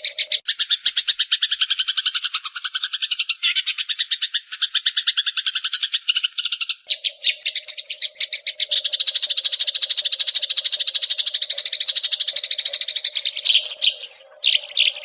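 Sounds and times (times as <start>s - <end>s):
bird fast chirping trill: 0.0s - 15.0s.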